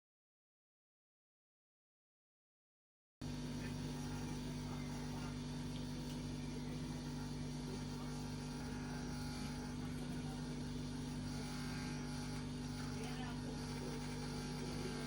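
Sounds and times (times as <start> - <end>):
steady low hum: 3.2 - 15.0.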